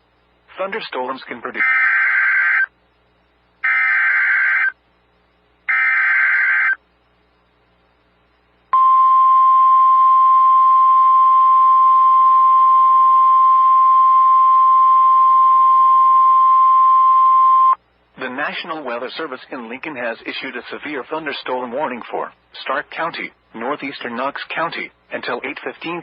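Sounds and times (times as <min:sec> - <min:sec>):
screeching digital data bursts: 0:01.6 - 0:02.7, 0:03.6 - 0:04.8, 0:05.7 - 0:06.8
steady alarm tone: 0:03.6 - 0:04.8, 0:05.7 - 0:06.8.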